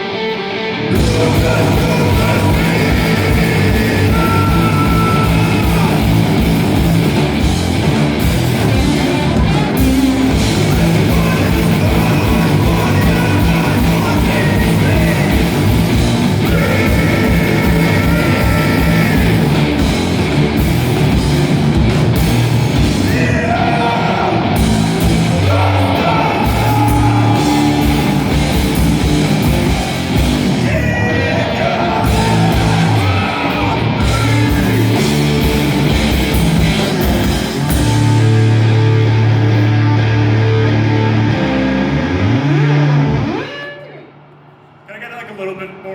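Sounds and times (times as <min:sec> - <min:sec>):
rock band playing loud: 0:00.0 - 0:44.2
person yelling singing: 0:00.9 - 0:06.8, 0:08.9 - 0:19.8, 0:23.0 - 0:35.7.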